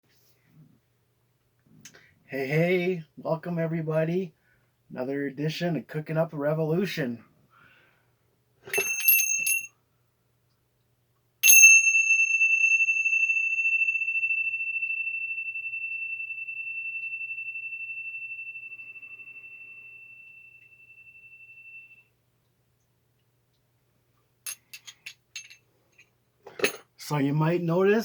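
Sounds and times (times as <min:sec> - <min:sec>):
small metal chime ringing: 0:08.7 - 0:09.7, 0:11.4 - 0:22.0, 0:24.5 - 0:25.6.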